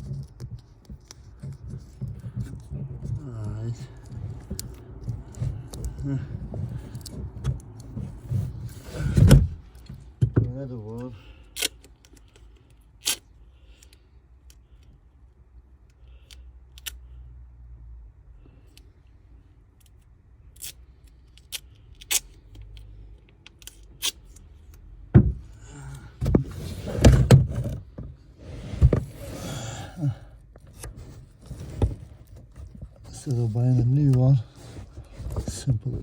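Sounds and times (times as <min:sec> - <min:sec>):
rustling tape: 0:00.0 - 0:10.1, 0:25.6 - 0:36.0.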